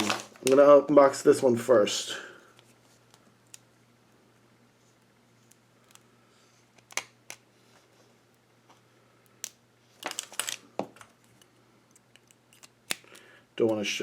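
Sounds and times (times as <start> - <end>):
plastic bag clicks and crackles: 0.0 - 0.7.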